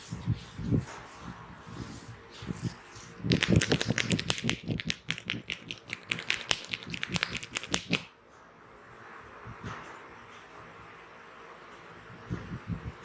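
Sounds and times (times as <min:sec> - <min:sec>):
hands tapping on head: 0:03.3 - 0:08.1.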